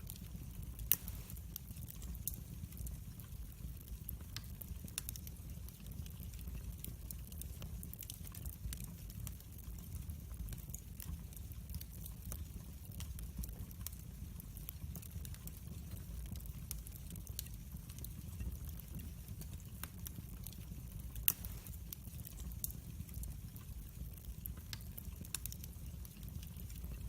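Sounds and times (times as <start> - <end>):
wood fire crackling: 0.0 - 27.0
low steady rumble: 0.9 - 1.4.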